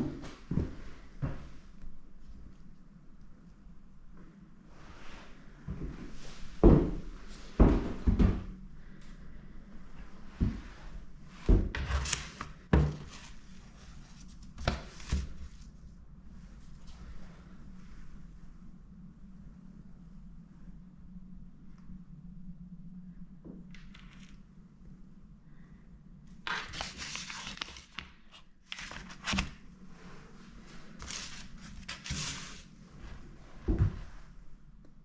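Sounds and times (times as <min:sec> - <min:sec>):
low steady rumble: 0:12.6 - 0:27.6.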